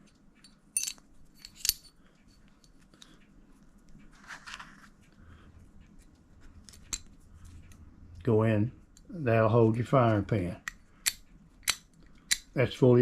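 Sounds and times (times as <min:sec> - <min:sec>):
metal parts clicking together: 0:00.4 - 0:01.9, 0:10.6 - 0:12.6.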